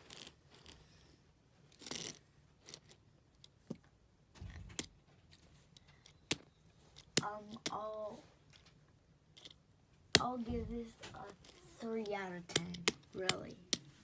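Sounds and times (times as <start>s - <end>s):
dull bump: 4.4s - 5.4s, 10.2s - 11.3s.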